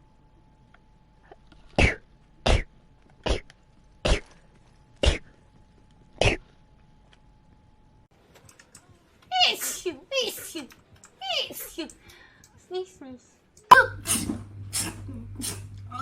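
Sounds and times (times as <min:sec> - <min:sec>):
person sneezing: 0:01.8 - 0:04.4, 0:13.7 - 0:15.7.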